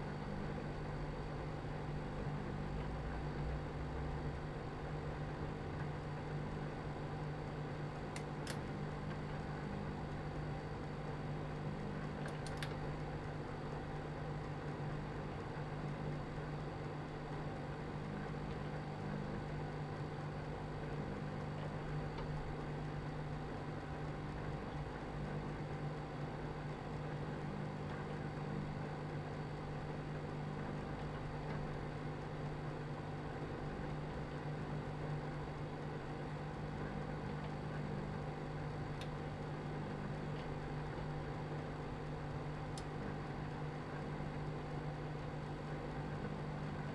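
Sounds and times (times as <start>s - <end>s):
microwave oven humming: 0.0s - 46.9s.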